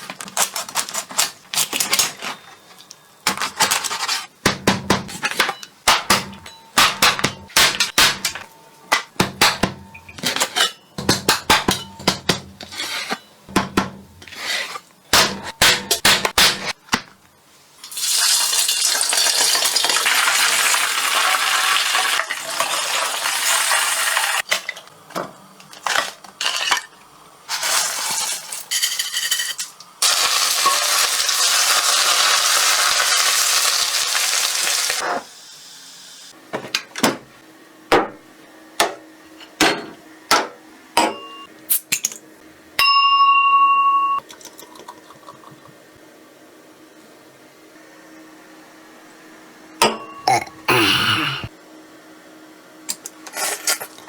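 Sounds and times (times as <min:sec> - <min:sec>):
utensils and dishes clinking: 0:05.0 - 0:13.4, 0:28.1 - 0:31.4, 0:39.3 - 0:42.2.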